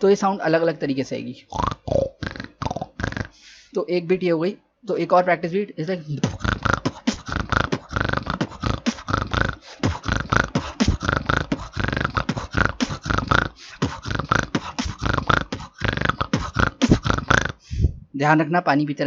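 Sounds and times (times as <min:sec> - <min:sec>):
beatboxed snort bass: 0:01.5 - 0:03.4, 0:06.2 - 0:18.1
beatboxed kick and snare: 0:06.2 - 0:18.0.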